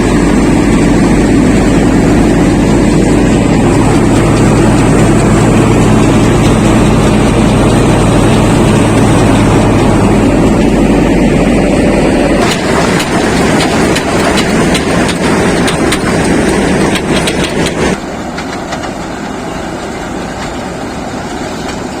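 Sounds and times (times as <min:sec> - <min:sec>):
combine harvester droning: 0:00.0 - 0:22.0
rattling clicks: 0:12.4 - 0:19.0.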